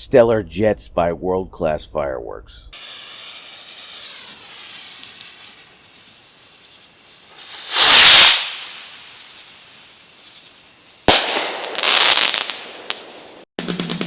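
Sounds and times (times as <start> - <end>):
firework bang: 2.8 - 5.7, 7.4 - 9.8, 11.0 - 13.5
fizzing crackle: 2.8 - 11.6
firework rocket whoosh: 2.8 - 13.5.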